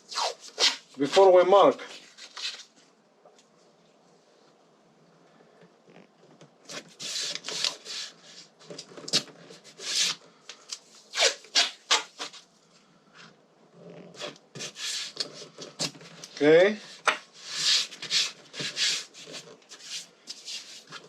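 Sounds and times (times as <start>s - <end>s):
hands rubbing and scraping: 14.1s - 21.0s.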